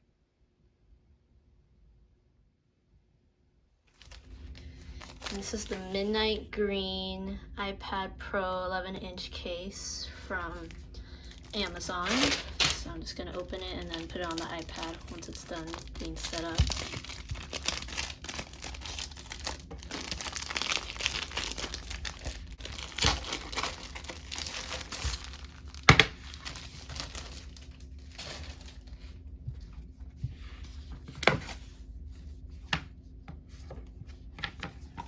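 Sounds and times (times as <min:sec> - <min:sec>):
packaging crinkling and tearing: 0:03.9 - 0:06.0, 0:10.5 - 0:29.1.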